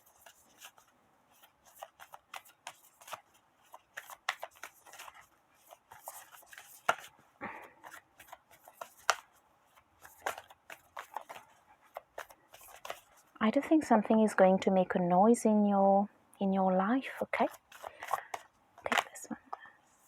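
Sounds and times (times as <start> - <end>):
cards being shuffled: 0.0 - 13.4, 17.4 - 19.2.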